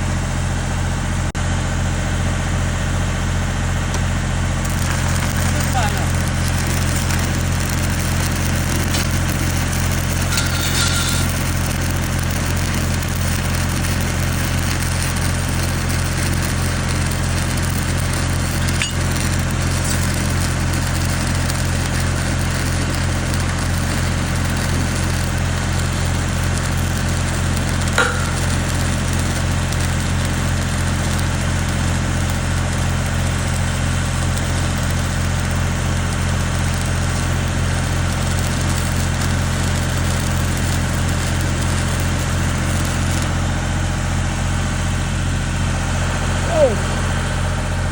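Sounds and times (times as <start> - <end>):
welding arc crackling: 2.9 - 47.9
engine humming: 3.9 - 33.0.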